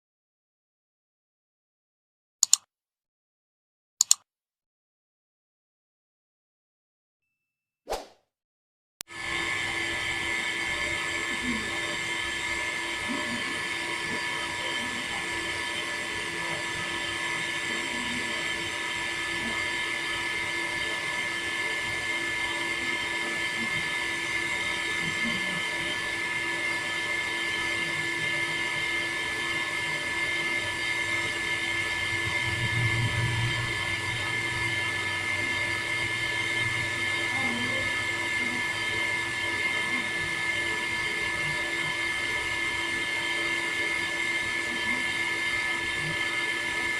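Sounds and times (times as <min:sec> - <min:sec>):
electric water pump whining: 0:09.1 - 0:46.9
low hum: 0:31.8 - 0:37.9.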